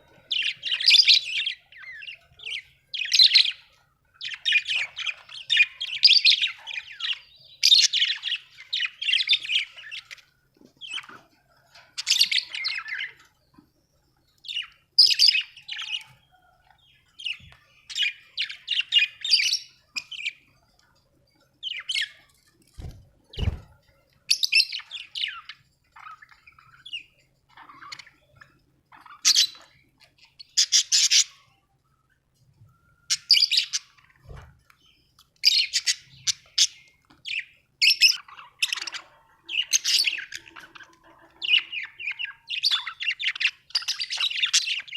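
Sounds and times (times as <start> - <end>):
budgerigar chirping and chattering: 24.4 - 31.5, 33.1 - 34.2, 35.4 - 44.9.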